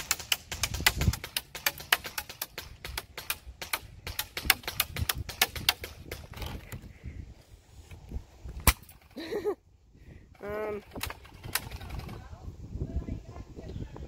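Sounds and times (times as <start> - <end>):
pellets striking wooden fence: 0.0 - 6.7.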